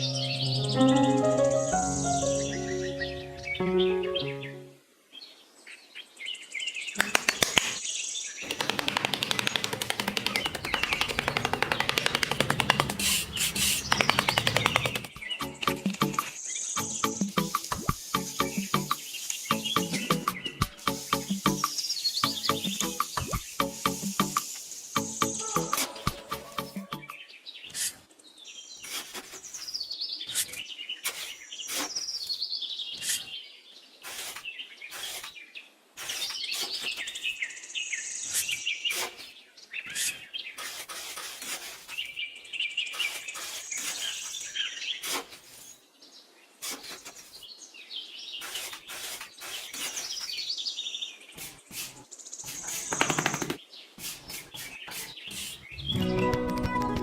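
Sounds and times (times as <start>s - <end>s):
small birds chirping: 0.0s - 56.0s
sharp clicks: 8.4s - 15.2s.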